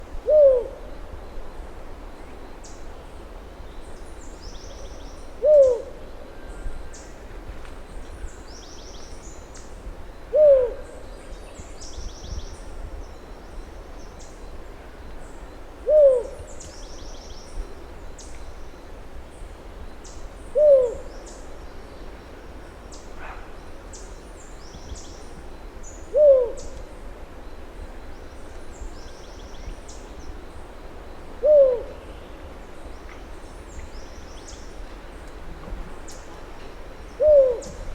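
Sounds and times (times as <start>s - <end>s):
bird hooting low: 0.2s - 1.0s, 4.6s - 6.0s, 10.2s - 11.1s, 15.8s - 17.3s, 20.4s - 21.4s, 23.1s - 26.8s, 31.3s - 32.1s, 35.5s - 37.9s.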